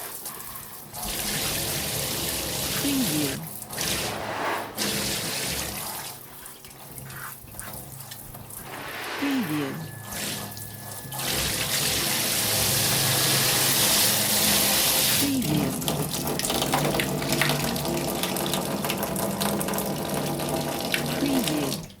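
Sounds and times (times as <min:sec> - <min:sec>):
water splashing and spattering: 0:00.0 - 0:22.0
shower water spray hissing: 0:08.0 - 0:15.6.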